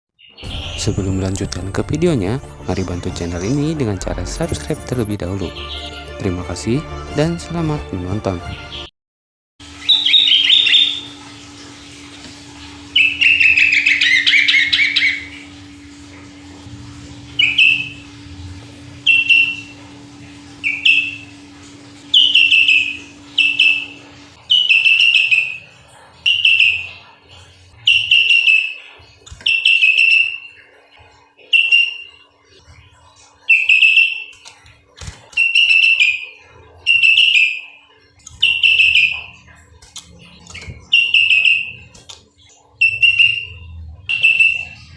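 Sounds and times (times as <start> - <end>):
bulbul singing: 0.2 - 6.4, 9.6 - 15.7, 17.3 - 18.2, 19.0 - 44.9.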